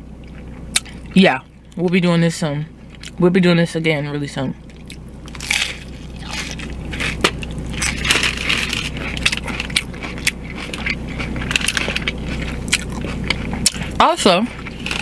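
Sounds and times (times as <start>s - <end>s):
crunchy taco shell chewing: 0.2s - 1.8s, 4.6s - 15.0s.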